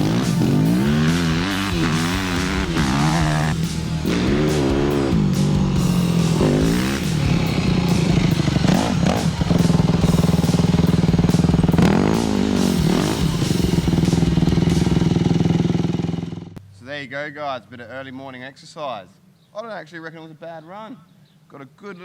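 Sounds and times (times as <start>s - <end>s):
background music with singing: 0.0s - 15.1s
motorbike engine running: 0.0s - 16.6s.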